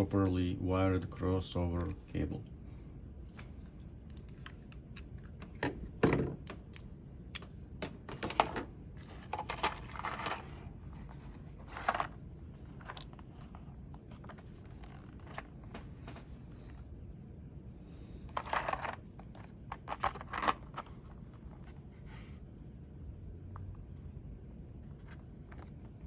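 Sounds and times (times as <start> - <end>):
cable handling clicks and knocks: 18.3 - 21.7.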